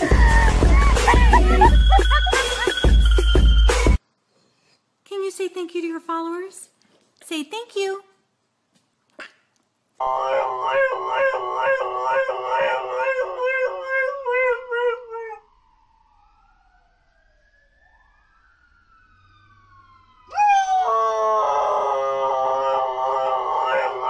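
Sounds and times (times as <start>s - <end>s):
dog howling: 10.0s - 15.5s, 20.3s - 24.0s.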